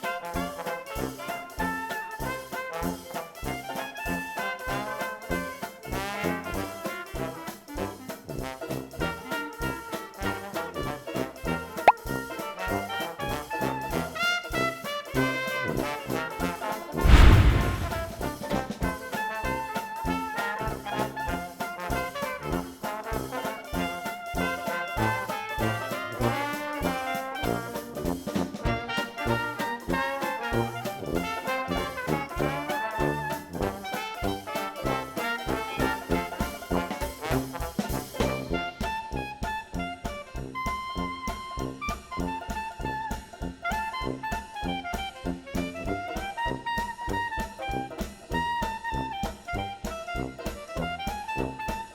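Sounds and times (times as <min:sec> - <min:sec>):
upbeat jazzy brass music: 0:00.0 - 0:51.9.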